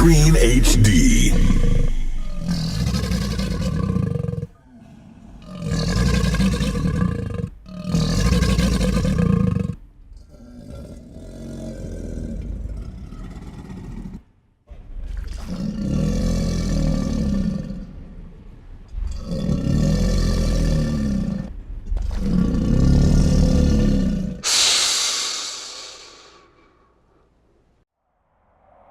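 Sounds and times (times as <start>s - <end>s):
large animal roaring: 1.4s - 14.3s, 15.0s - 18.3s, 19.0s - 24.5s
drawn-out animal growl: 2.3s - 14.3s.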